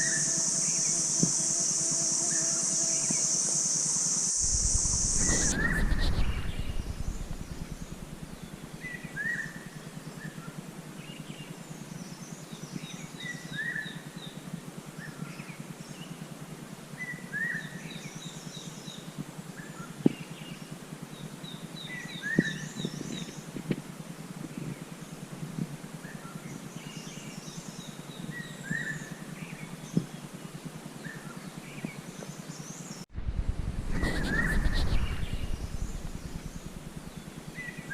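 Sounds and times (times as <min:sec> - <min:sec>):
songbird singing: 0:00.0 - 0:14.4, 0:17.0 - 0:23.6, 0:33.9 - 0:37.9
steady low hum: 0:00.0 - 0:37.9.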